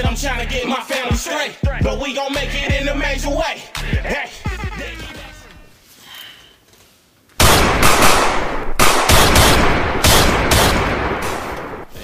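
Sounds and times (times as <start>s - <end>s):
loud gunshots: 7.4s - 11.9s.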